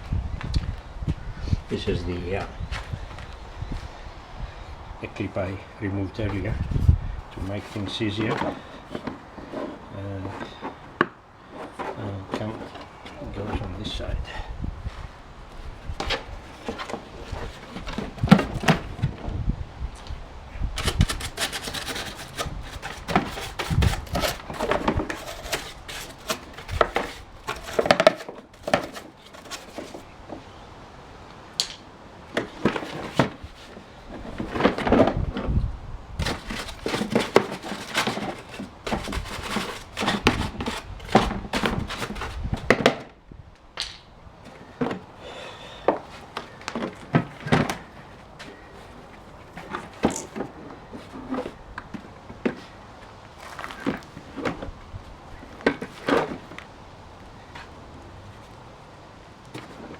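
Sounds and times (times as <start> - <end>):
machine parts knocking and scraping: 20.8 - 30.0, 36.2 - 42.4.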